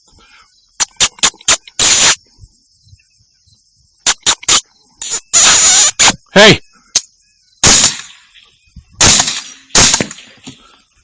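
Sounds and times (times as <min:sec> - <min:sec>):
loud burst of noise: 0:07.6 - 0:08.2
rifle sharp clicks: 0:09.0 - 0:10.3.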